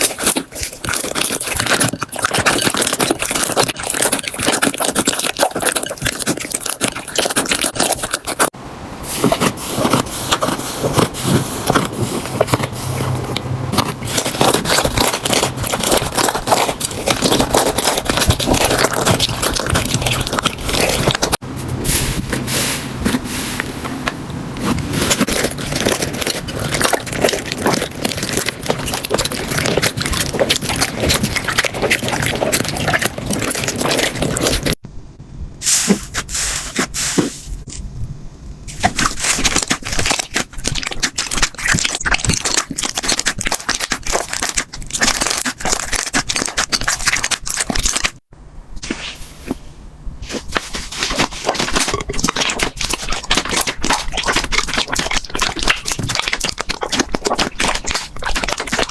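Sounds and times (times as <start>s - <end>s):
slime squished by hand: 9.1s - 21.4s, 24.6s - 34.8s, 38.7s - 49.6s, 50.2s - 58.9s.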